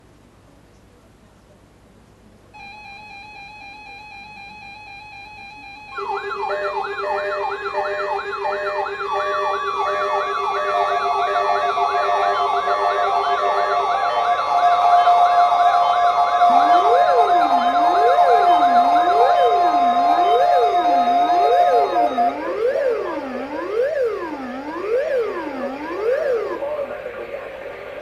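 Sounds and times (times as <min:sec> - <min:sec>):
sirens sweeping up and down: 0:04.4 - 0:28.0
slow rising and falling siren wail: 0:05.9 - 0:28.0.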